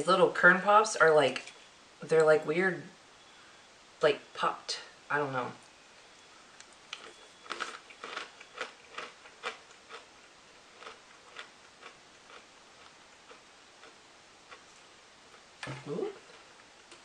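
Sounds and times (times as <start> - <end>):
crunchy snack chewing: 6.9 - 17.0.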